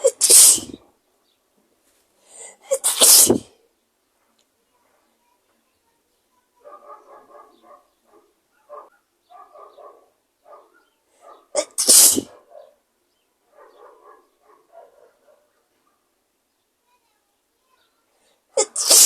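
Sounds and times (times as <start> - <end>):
person sneezing: 0.0 - 0.8, 2.4 - 3.5, 11.6 - 12.4, 18.6 - 19.0.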